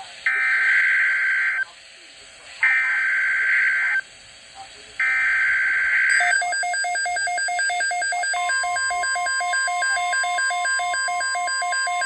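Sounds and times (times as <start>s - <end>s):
steady warning alarm tone: 5.0s - 12.0s.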